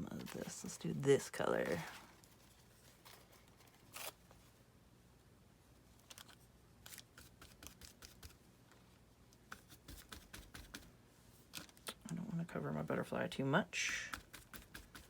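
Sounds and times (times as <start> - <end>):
taps and scratches on paper: 9.5 - 10.9, 13.9 - 15.0.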